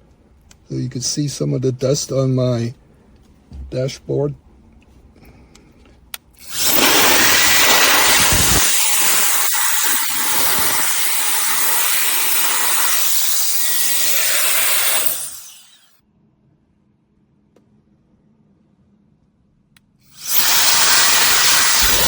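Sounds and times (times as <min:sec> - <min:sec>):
air duster blowing with motor whine: 0:06.4 - 0:15.9, 0:20.1 - 0:22.0.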